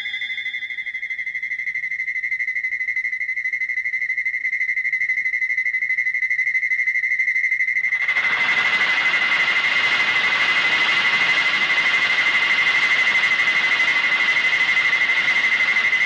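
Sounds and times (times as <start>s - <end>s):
high-pitched warbling tone: 0.0s - 1.6s
other tones: 0.0s - 2.6s.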